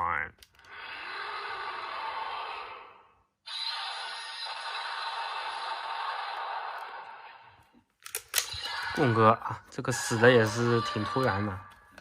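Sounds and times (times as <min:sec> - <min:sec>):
toy speaker rushing noise effect: 0:03.5 - 0:05.7.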